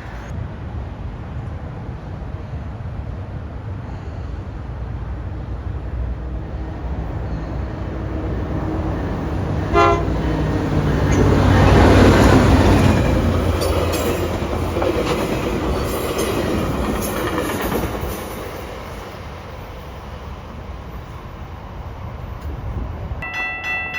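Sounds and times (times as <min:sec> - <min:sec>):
train engine rumble: 0:00.0 - 0:23.9
train horn blast: 0:09.4 - 0:10.6
wheels clicking over rail joints: 0:10.4 - 0:18.6.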